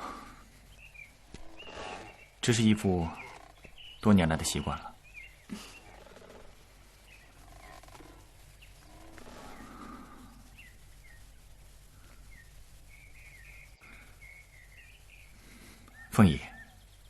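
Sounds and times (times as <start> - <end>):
faint bird chirps: 0.0 - 17.0
low steady hum: 0.0 - 17.0.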